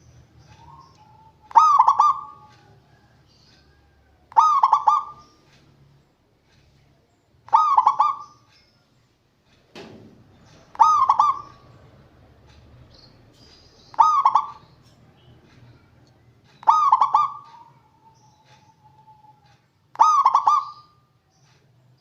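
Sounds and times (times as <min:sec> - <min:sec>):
dove cooing: 0:00.4 - 0:05.5, 0:07.5 - 0:08.4, 0:10.7 - 0:11.8, 0:13.8 - 0:14.8, 0:16.6 - 0:21.0
brief rustle or thump: 0:09.7 - 0:10.2.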